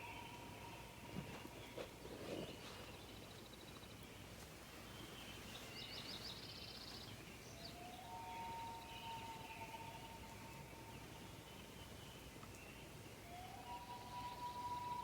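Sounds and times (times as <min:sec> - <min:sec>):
long whistled call: 0:13.3 - 0:15.0.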